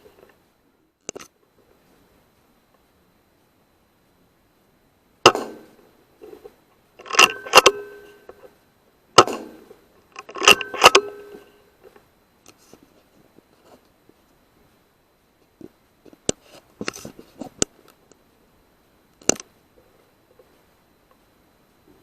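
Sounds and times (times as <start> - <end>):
air rifle shot crack: 5.2 - 5.8.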